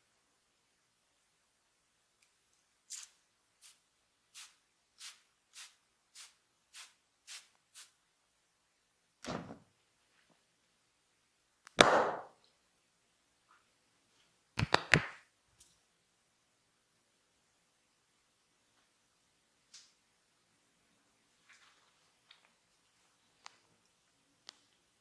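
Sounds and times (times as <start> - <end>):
hand smacking skin: 14.6 - 15.2.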